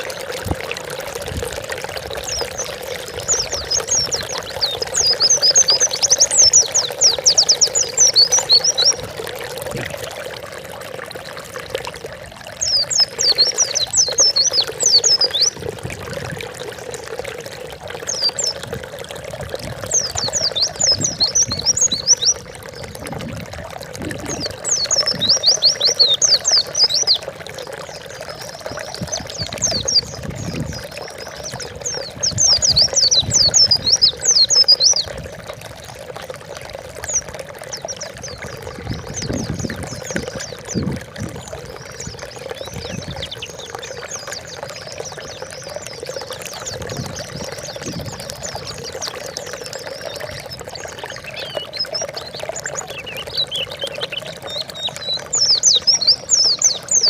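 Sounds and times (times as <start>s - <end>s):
running water: 0.0s - 57.0s
bird twittering: 2.2s - 9.0s, 12.6s - 15.6s, 19.9s - 23.2s, 24.0s - 27.7s, 39.0s - 57.0s.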